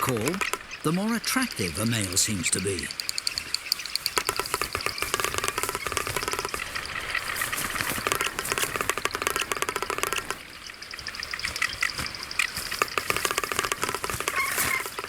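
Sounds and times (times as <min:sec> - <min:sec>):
birds rattling clattering calls: 0:00.0 - 0:15.0.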